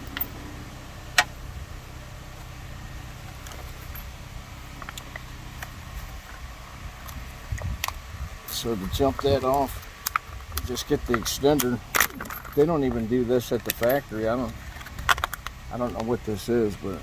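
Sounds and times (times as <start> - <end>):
machinery humming: 0.0 - 17.0.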